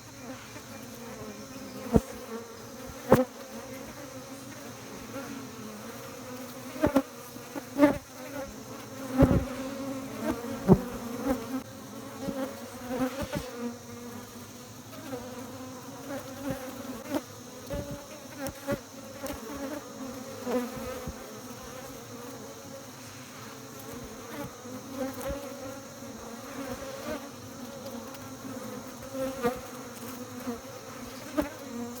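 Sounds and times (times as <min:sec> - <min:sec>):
bees buzzing: 0:00.0 - 0:32.0
single bee buzzing close: 0:00.0 - 0:32.0.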